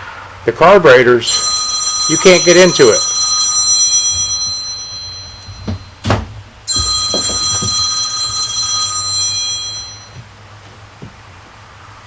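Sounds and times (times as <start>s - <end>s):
metallic clank ringing: 1.3s - 10.2s
knock: 5.5s - 8.5s.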